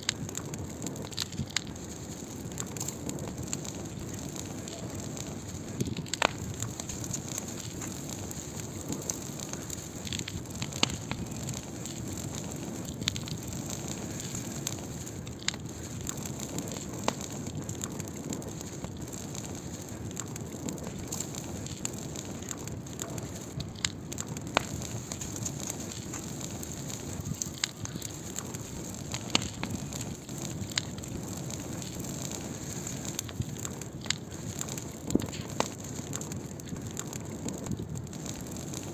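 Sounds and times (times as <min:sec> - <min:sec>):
fire crackles and pops: 0:00.0 - 0:38.9
wood fire hissing: 0:00.0 - 0:38.9.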